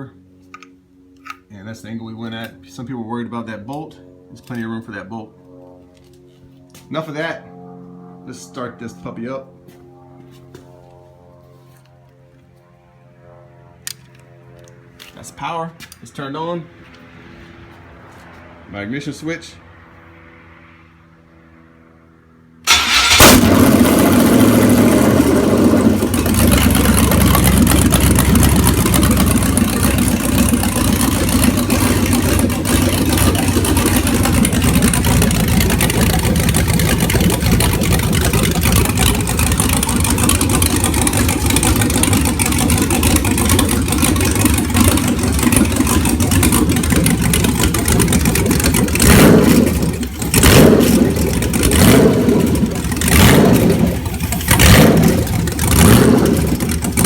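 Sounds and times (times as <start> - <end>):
loud engine running: 15.8 - 57.0.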